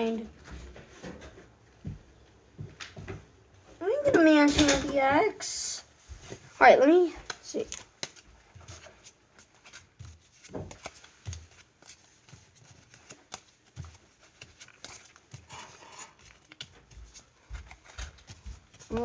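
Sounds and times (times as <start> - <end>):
trading cards clicking and rustling: 6.8 - 19.0.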